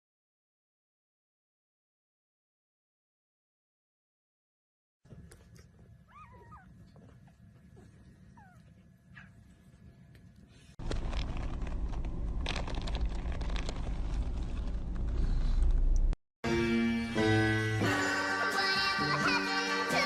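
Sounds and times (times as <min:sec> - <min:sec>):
dog whimpering: 0:06.0 - 0:09.3.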